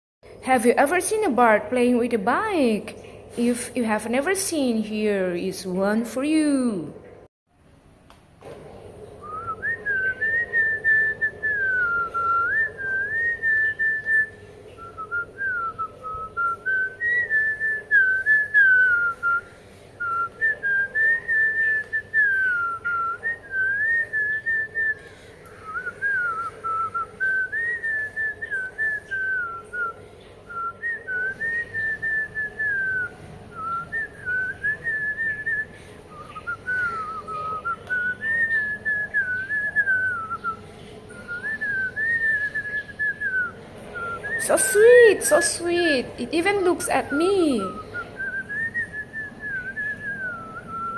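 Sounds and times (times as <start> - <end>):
whistled tune: 9.2 - 25.0, 25.6 - 45.9, 47.1 - 50.9.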